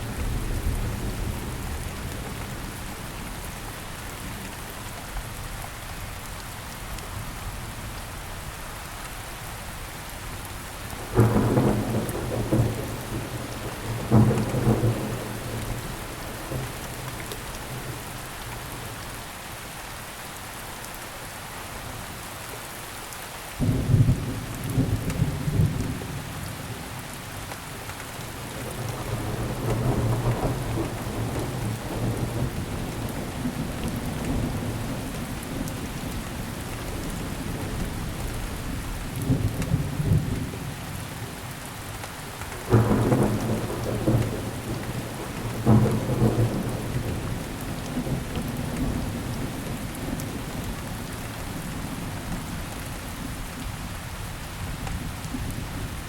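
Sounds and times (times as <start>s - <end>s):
steady rain falling: 0.0s - 56.0s
thunder rolling: 42.7s - 50.2s.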